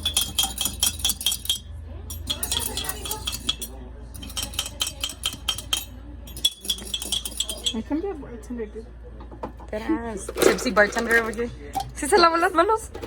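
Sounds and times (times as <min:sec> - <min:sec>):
fork clinking against cup: 0:00.0 - 0:07.9.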